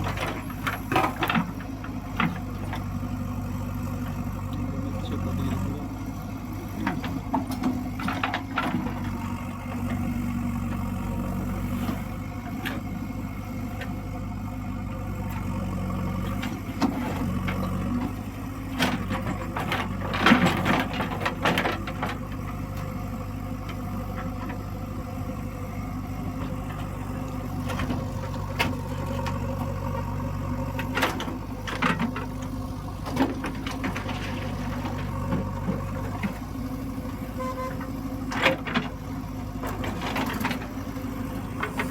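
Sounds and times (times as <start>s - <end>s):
backhoe engine running: 0.0s - 41.9s
metal clanks and rattles: 18.8s - 22.5s.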